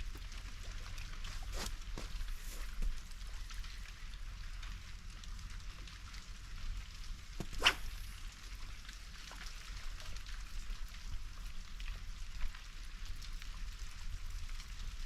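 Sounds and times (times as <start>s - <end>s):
steady low rumble: 0.0s - 9.2s.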